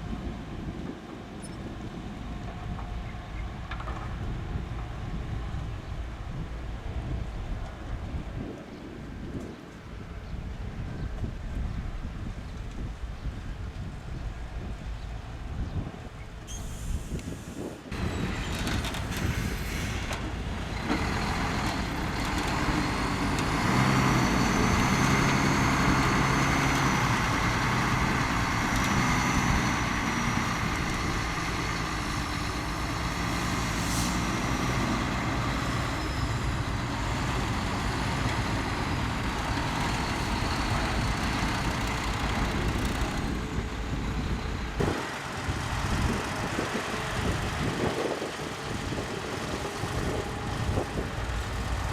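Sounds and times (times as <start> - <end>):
heavy machinery diesel engine: 0.0 - 8.3, 14.0 - 51.9.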